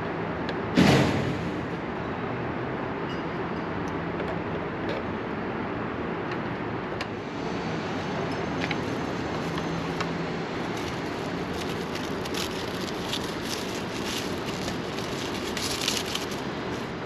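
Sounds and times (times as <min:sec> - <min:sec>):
steady background noise: 0:00.0 - 0:17.0.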